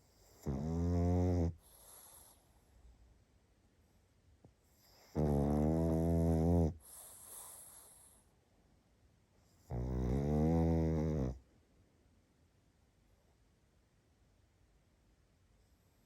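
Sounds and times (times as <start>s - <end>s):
dog snoring: 0.0s - 2.5s, 4.7s - 8.2s, 9.5s - 11.4s
soft airy breath: 1.6s - 2.8s, 6.8s - 8.5s.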